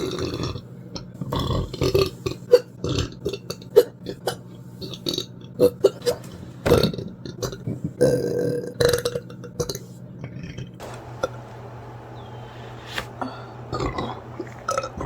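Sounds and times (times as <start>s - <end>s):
person belching: 6.7s - 9.8s, 13.7s - 15.0s.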